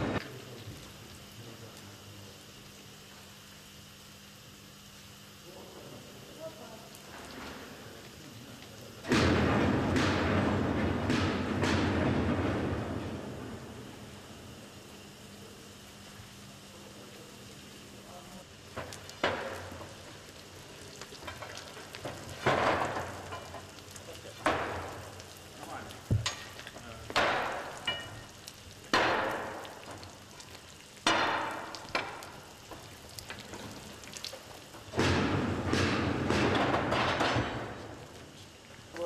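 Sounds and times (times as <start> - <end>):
molten metal hissing and sputtering: 0.0 - 39.0.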